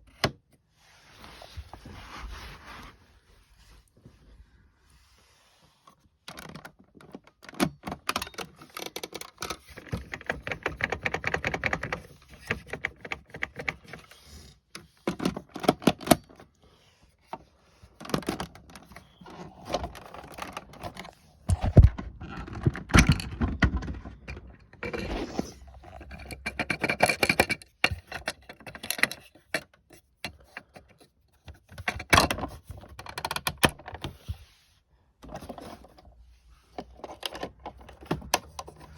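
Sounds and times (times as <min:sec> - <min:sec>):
plastic toys clicking and rattling: 0:06.4 - 0:14.1, 0:25.9 - 0:30.9.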